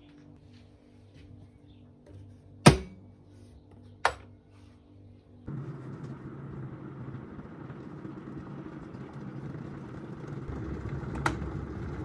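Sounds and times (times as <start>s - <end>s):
electric kettle rumbling: 5.5s - 12.0s.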